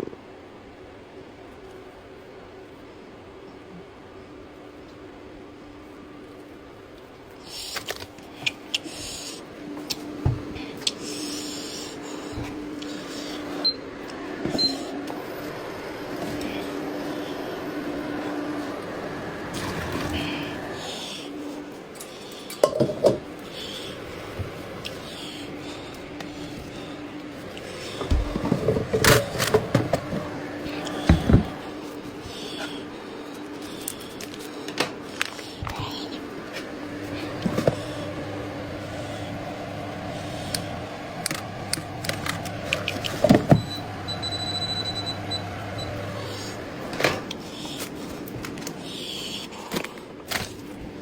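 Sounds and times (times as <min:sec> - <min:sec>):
steady low hum: 0:00.0 - 0:51.0
heavy thuds: 0:27.7 - 0:31.7.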